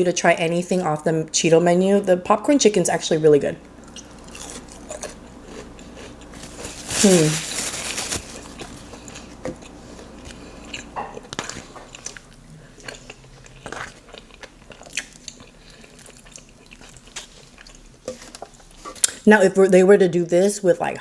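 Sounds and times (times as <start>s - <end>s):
crunching and chewing fried chicken: 3.6s - 19.3s.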